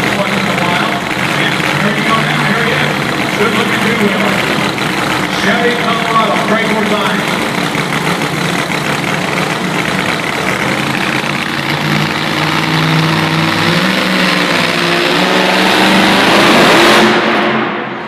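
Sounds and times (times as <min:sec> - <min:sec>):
truck engine running hard: 0:00.0 - 0:18.0.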